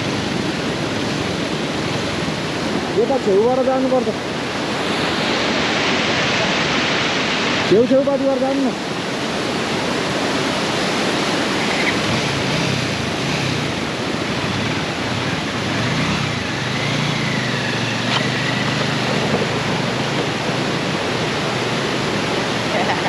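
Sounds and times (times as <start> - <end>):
motorcycle engine running: 0.0 - 4.0, 11.3 - 23.0
rushing river water: 0.0 - 23.0.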